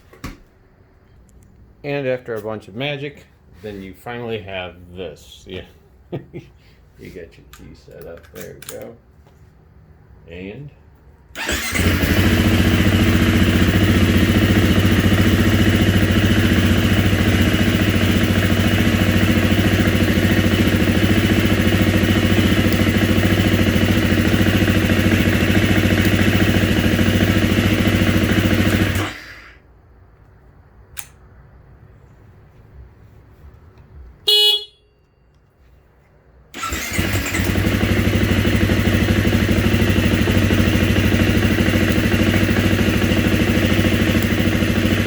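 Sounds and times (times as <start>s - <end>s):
click: 1.1s - 1.7s, 30.2s - 31.2s, 35.0s - 35.5s
dirt bike engine idling: 11.4s - 29.2s, 36.6s - 45.0s.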